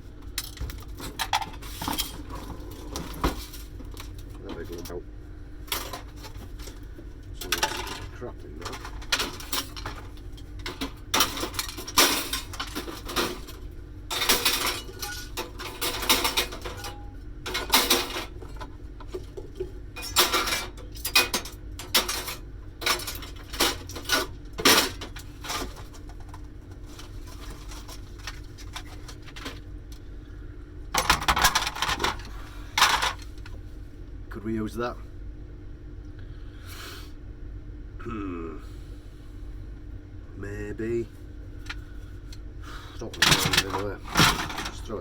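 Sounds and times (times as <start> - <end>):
steady low hum: 0.0 - 45.0
metal and plastic parts clattering: 0.4 - 5.0, 5.7 - 6.8, 7.4 - 29.6, 31.0 - 33.5, 43.0 - 45.0.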